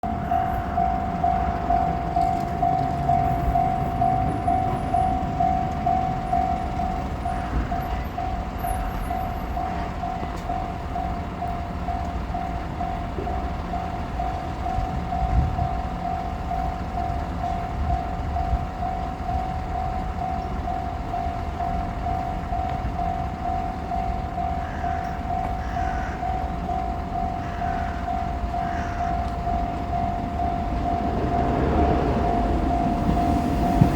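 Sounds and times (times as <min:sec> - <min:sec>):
level-crossing warning bell: 0:00.0 - 0:33.9
low rumble: 0:30.0 - 0:33.9.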